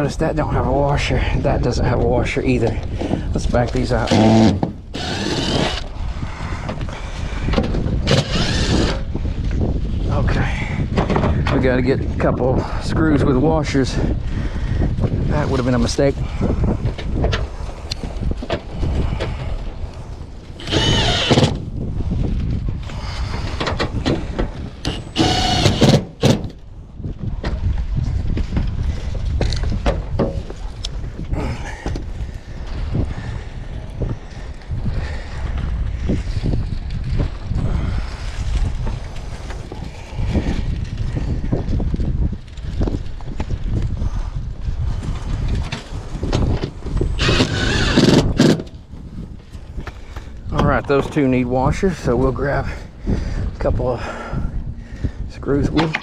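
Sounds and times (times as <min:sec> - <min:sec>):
wind buffeting microphone: 0:00.0 - 0:56.0
cordless drill backing out screws: 0:04.0 - 0:05.8, 0:08.1 - 0:09.0, 0:20.6 - 0:21.6, 0:24.8 - 0:26.6, 0:47.2 - 0:48.7.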